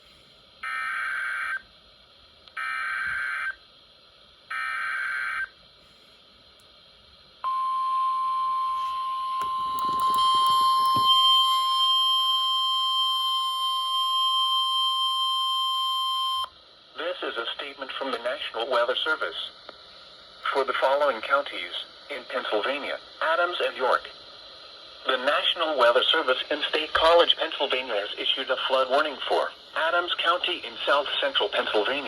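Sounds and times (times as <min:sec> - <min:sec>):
steady single-pitch attention tone: 0:07.4 - 0:16.5
buzzy data tone bursts: 0:08.7 - 0:12.4.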